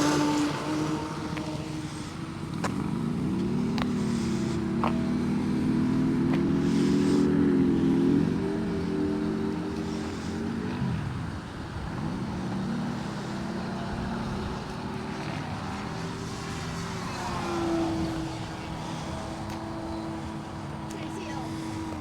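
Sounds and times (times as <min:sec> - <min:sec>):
electric motors whining: 0:00.0 - 0:22.0.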